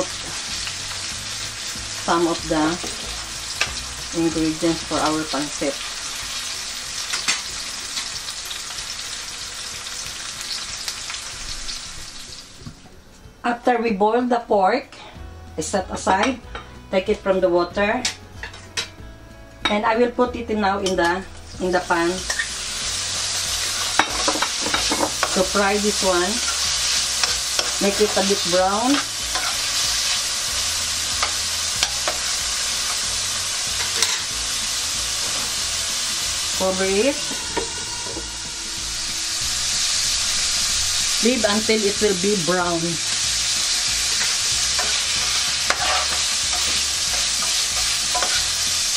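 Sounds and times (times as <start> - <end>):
onion sizzling in hot oil: 0.0 - 12.8, 20.6 - 48.9
utensil scraping pan: 26.4 - 30.2, 43.4 - 48.9.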